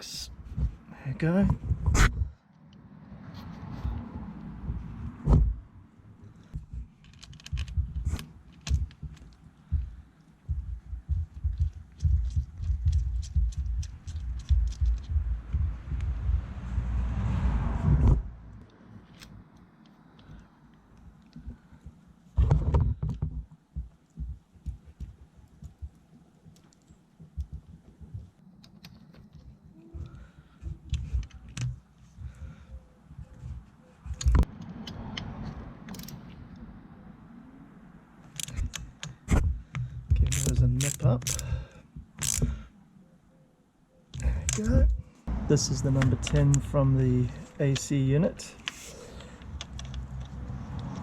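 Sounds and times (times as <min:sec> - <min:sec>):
low bumps: 0:00.0 - 0:02.5, 0:03.1 - 0:18.7
low thumps and knocks: 0:00.4 - 0:00.8, 0:01.4 - 0:02.4, 0:03.9 - 0:05.7, 0:06.5 - 0:18.5, 0:21.4 - 0:26.1, 0:27.2 - 0:28.4, 0:38.4 - 0:40.4
metal fittings and tools clicking: 0:07.0 - 0:09.4, 0:11.6 - 0:15.2, 0:38.2 - 0:42.7, 0:47.3 - 0:51.0.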